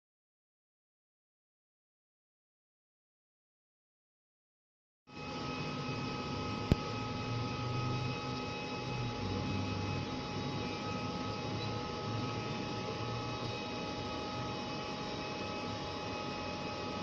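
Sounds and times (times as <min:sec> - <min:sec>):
blower and fans whirring: 0:05.1 - 0:17.0.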